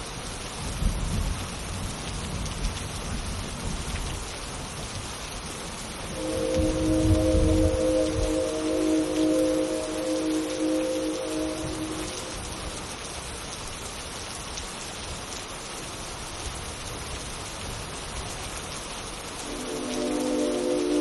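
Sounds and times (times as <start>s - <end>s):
steady rain-like hiss: 0.0s - 21.0s
synthesized train horn blasts: 6.1s - 12.9s, 19.4s - 21.0s.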